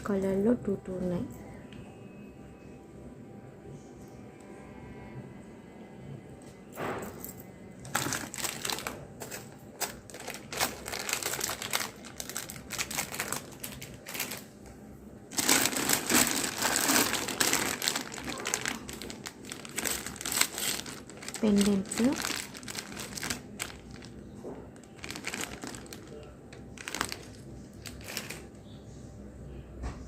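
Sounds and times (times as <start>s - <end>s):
plastic packaging crinkling: 7.8s - 28.6s.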